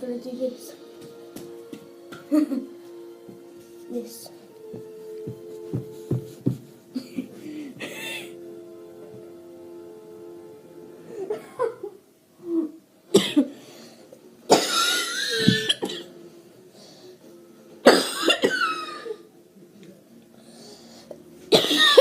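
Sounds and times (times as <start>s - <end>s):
person coughing: 13.2s - 13.5s, 21.6s - 22.0s.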